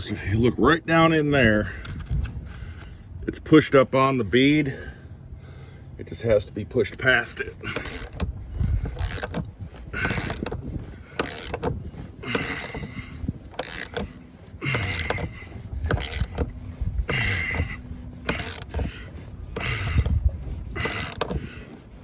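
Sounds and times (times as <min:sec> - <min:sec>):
tire bead breaker creaking: 0:06.2 - 0:22.0.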